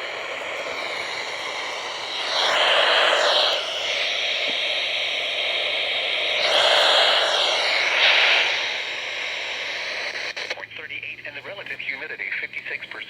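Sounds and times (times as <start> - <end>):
radio static hiss: 0.0 - 13.0.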